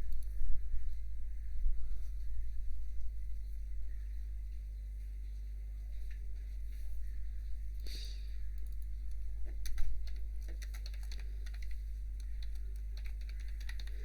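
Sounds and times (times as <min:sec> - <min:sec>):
low electrical hum: 0:00.0 - 0:14.0
keyboard key clicks: 0:08.6 - 0:14.0.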